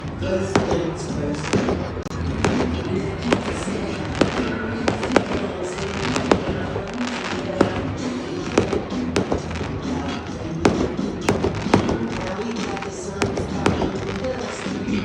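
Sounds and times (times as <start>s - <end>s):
fireworks banging: 0.0s - 15.0s
music playing: 0.0s - 15.0s.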